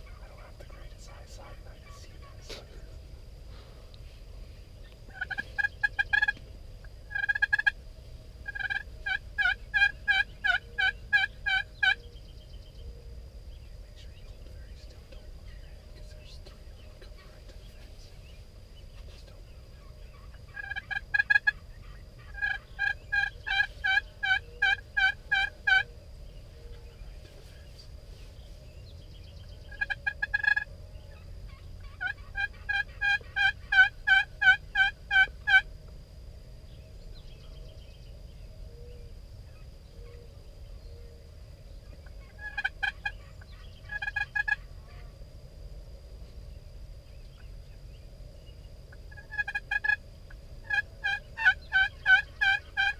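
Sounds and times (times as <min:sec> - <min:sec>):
turkey yelping: 0:05.1 - 0:06.4, 0:07.1 - 0:07.8, 0:08.5 - 0:12.0, 0:19.8 - 0:25.9, 0:29.7 - 0:35.6, 0:42.1 - 0:45.0, 0:49.1 - 0:50.0, 0:50.6 - 0:52.9.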